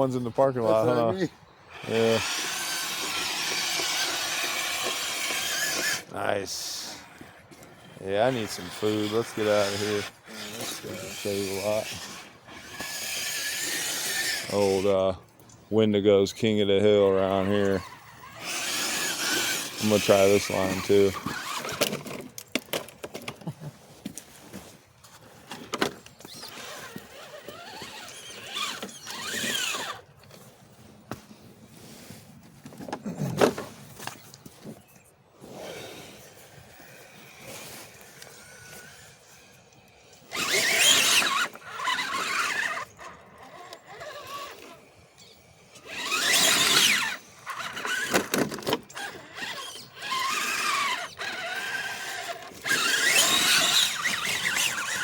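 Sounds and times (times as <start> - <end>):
electric motor and gearbox whining: 0.0 - 23.5, 24.4 - 30.5, 32.6 - 55.0.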